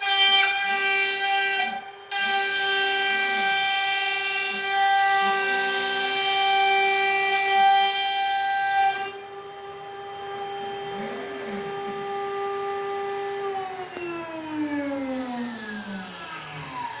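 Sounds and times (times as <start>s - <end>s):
router spindle whining: 0.0s - 17.0s.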